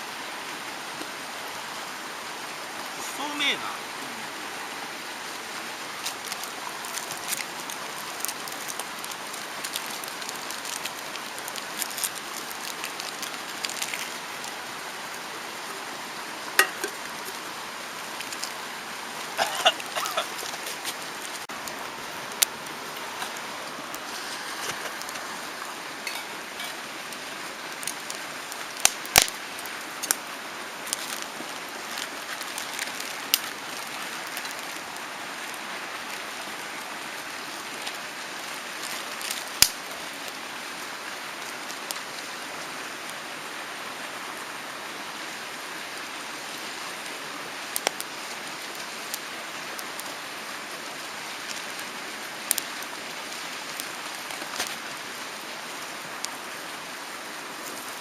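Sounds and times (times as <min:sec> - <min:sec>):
mountain stream rushing: 0:00.0 - 0:58.0
campfire crackling and popping: 0:05.6 - 0:15.8, 0:16.5 - 0:42.2, 0:47.7 - 0:50.3, 0:50.9 - 0:55.4.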